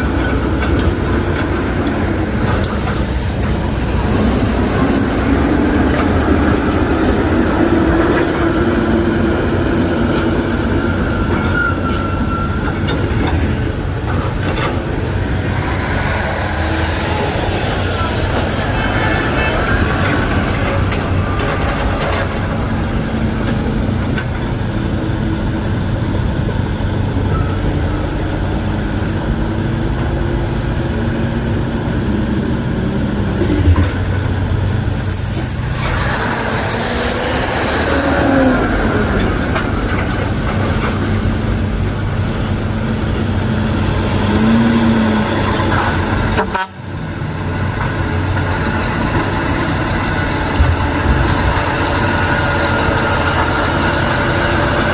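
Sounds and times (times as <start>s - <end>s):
heavy diesel engine running: 0.0s - 54.9s.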